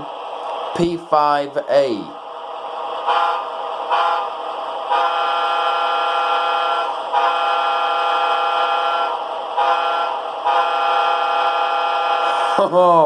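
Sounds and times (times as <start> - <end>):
model train air horn blasts: 3.0 - 4.3, 4.9 - 12.6.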